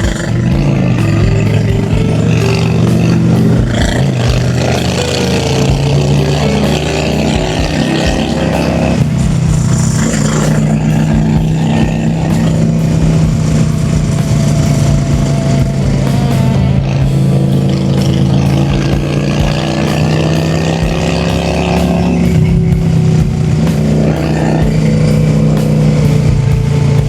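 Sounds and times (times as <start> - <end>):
motorcycle engine running: 0.0 - 27.0.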